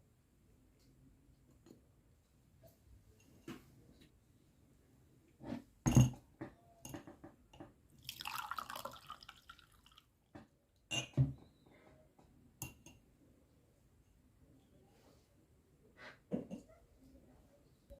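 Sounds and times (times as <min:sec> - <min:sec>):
kitchenware knocks and clinks: 0:05.9 - 0:07.8, 0:10.9 - 0:11.5, 0:16.3 - 0:16.7
liquid pouring into cup: 0:08.0 - 0:10.1.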